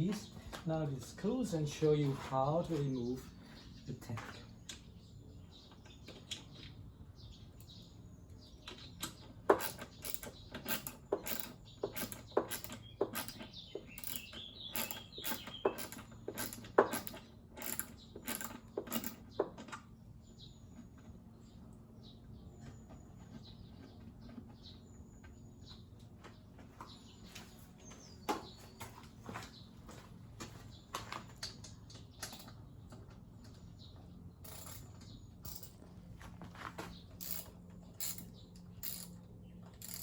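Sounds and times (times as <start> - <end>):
birds chirping faintly: 0.0 - 40.0
ratchet clicking: 9.0 - 19.2, 34.4 - 34.8, 37.2 - 39.2, 39.8 - 40.0.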